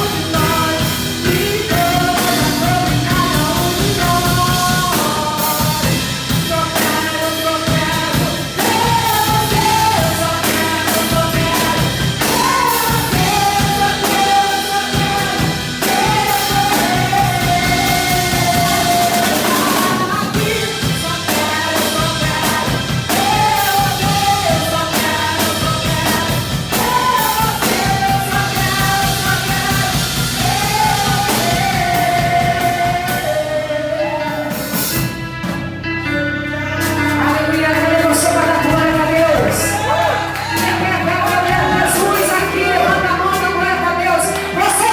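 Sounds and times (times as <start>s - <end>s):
person singing long notes: 0.0s - 35.0s
band playing worship song: 0.0s - 44.9s
drums: 0.0s - 44.9s.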